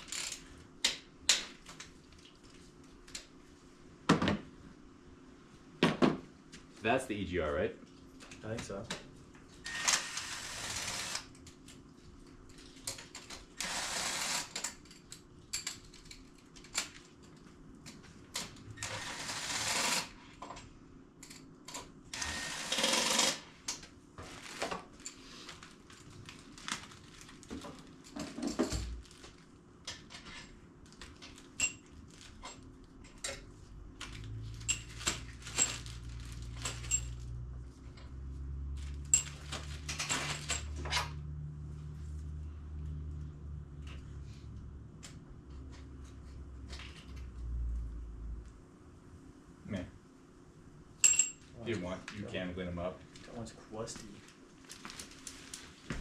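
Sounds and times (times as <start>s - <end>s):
tools and metal parts clinking: 31.4s - 33.5s, 34.5s - 37.3s, 38.8s - 40.9s, 51.0s - 51.5s.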